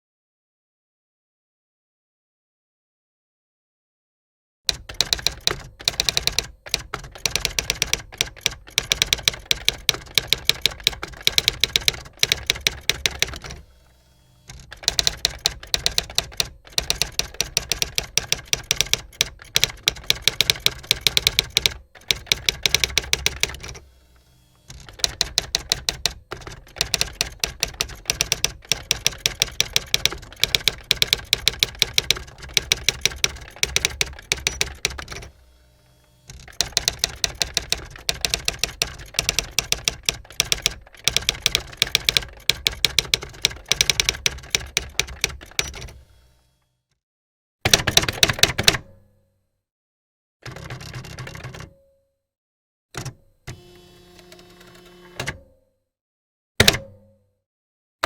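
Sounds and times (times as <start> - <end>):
typewriter key strikes: 4.7 - 13.6, 14.5 - 23.8, 24.7 - 35.2, 36.3 - 46.0, 47.7 - 49.0, 56.6 - 57.1.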